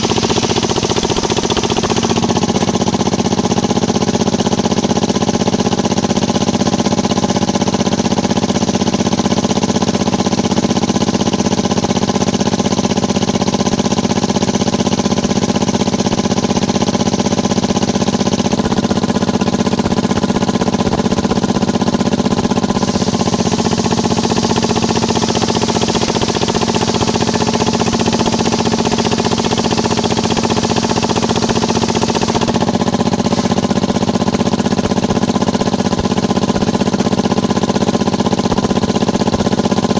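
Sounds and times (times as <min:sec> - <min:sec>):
sawmill motor hum: 0:00.0 - 0:39.9
saw blade hissing through wood: 0:22.7 - 0:26.6.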